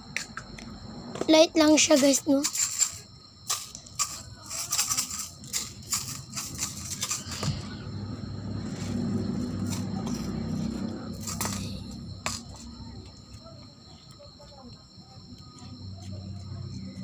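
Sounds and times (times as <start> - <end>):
low steady rumble: 5.7 - 13.3.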